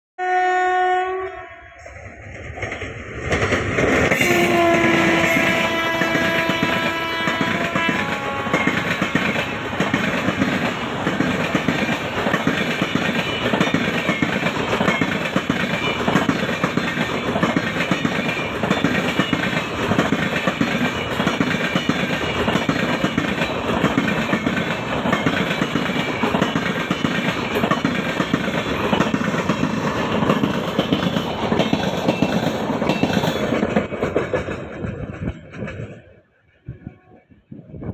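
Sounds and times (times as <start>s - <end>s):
train horn: 0.2s - 1.8s, 4.1s - 10.0s
train wheels clattering over rails: 2.1s - 36.3s.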